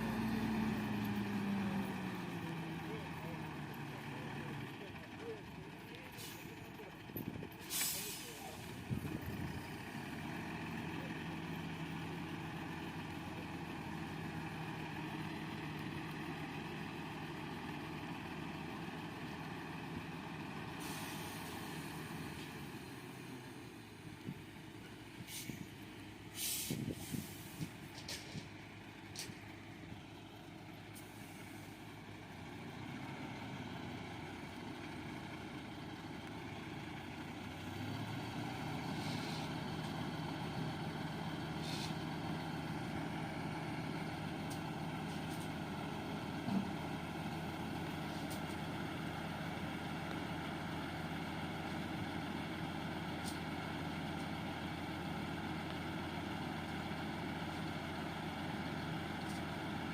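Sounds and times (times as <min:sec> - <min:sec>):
diesel truck engine running: 0:00.0 - 0:59.9
air brake hisses: 0:07.6 - 0:08.6, 0:20.8 - 0:21.8, 0:25.2 - 0:25.7, 0:26.3 - 0:27.7, 0:41.6 - 0:42.0.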